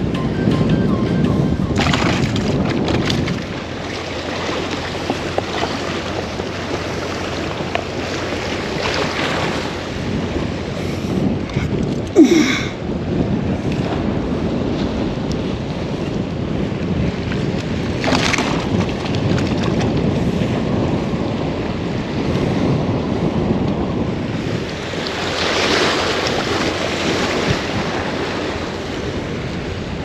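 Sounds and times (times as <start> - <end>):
high-pitched multi-tone sound: 0.0 - 6.4
wind buffeting microphone: 0.0 - 30.0.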